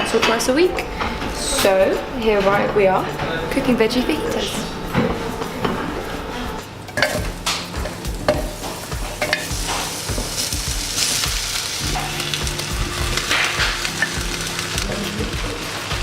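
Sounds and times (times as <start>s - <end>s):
utensil knocking against pan: 6.9s - 10.4s
vegetables sizzling in a frying pan: 6.9s - 16.0s.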